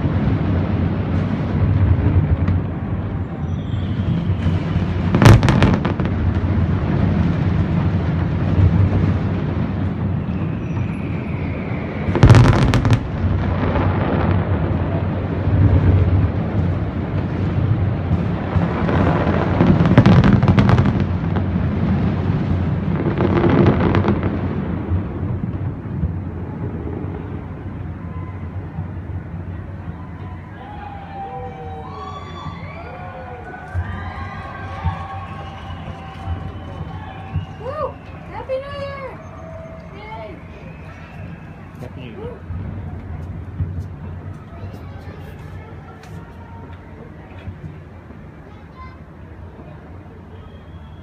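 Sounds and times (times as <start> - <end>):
rumble of explosions: 0.0 - 30.5
fireworks booming: 0.0 - 48.2
fireworks crackling: 0.0 - 51.0.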